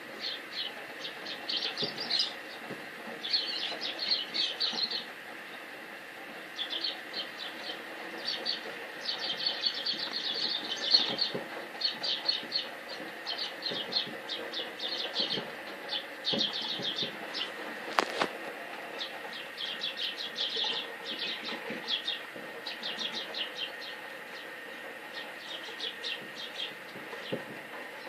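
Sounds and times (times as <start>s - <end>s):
small birds chirping: 0.2s - 5.6s, 6.3s - 28.0s.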